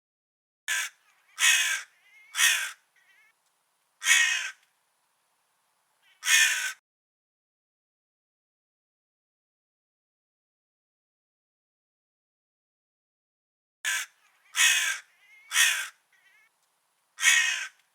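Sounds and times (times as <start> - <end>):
crow cawing: 0.7 - 3.4, 4.0 - 4.6, 6.0 - 6.8, 13.9 - 16.5, 17.2 - 17.8.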